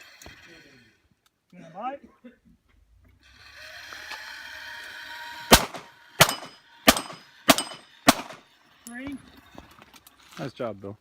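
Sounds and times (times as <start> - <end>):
target whirring along track: 3.2 - 8.6
pistol shots: 5.5 - 8.4
ring of steel plate: 6.2 - 8.4.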